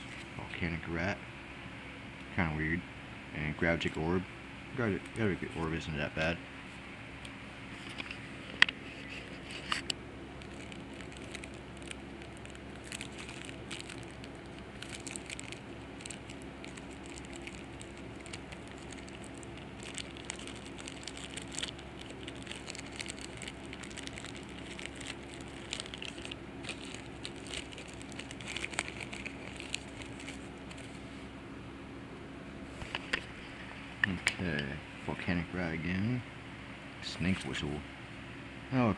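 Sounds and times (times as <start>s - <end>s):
cards being handled: 7.8s - 31.1s
foil wrappers crinkling and tearing: 8.9s - 31.0s.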